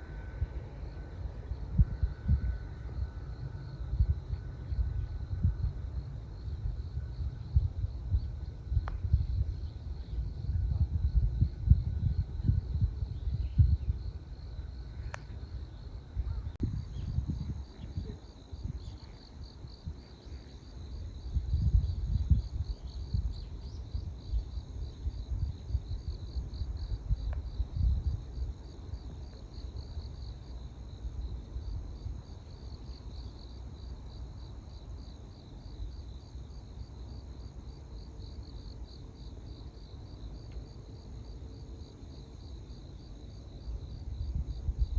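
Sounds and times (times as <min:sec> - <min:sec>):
wind gusting on microphone: 0:00.0 - 0:30.3, 0:43.5 - 0:44.9
insects trilling: 0:11.4 - 0:31.8.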